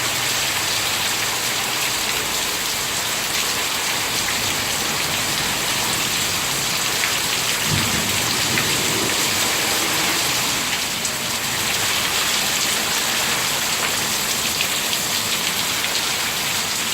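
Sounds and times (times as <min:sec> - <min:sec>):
heavy rain: 0:00.0 - 0:16.9
low rumble of thunder: 0:04.5 - 0:10.6.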